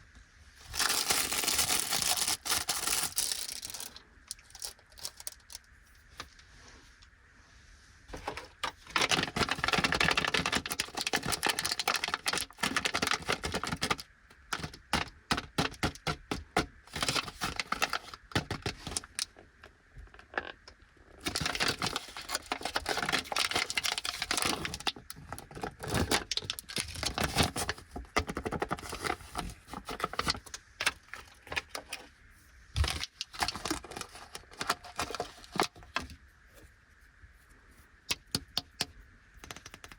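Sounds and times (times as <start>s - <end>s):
plastic wrapper crinkling: 0.6s - 5.6s, 8.8s - 16.1s, 16.9s - 19.3s, 21.2s - 32.1s, 32.8s - 36.1s
clicks and taps: 38.1s - 39.9s.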